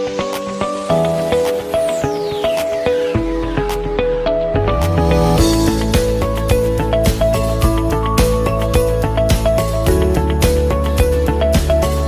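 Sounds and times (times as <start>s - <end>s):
new-age synth music with beat: 0.0s - 12.0s
falling swoosh: 4.2s - 6.0s.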